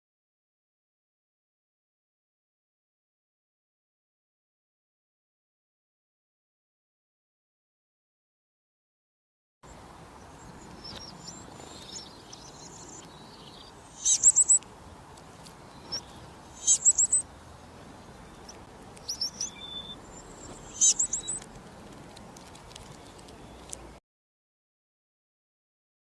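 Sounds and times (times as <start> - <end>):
low hiss: 9.7 - 24.0
fainter high calls: 10.8 - 14.6, 15.7 - 17.3, 19.0 - 21.5
cricket chirping: 11.0 - 14.6, 15.8 - 17.2, 19.1 - 21.4.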